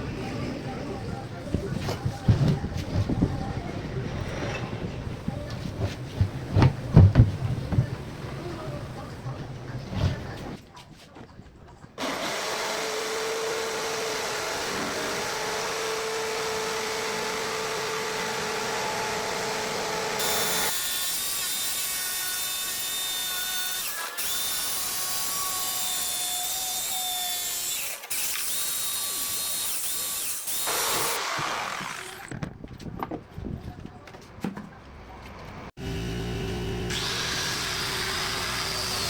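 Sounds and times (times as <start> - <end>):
electric power tool running: 12.0 - 32.3, 35.8 - 39.0.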